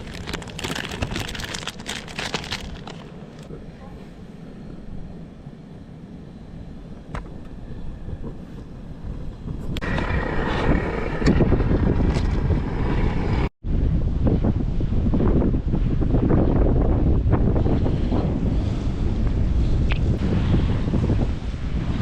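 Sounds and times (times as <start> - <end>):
wind buffeting microphone: 0.0 - 3.5, 6.3 - 22.0.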